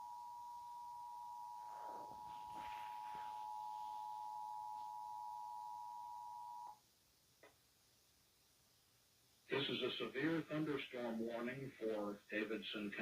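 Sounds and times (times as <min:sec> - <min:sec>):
two-tone alarm signal: 0:00.0 - 0:06.8.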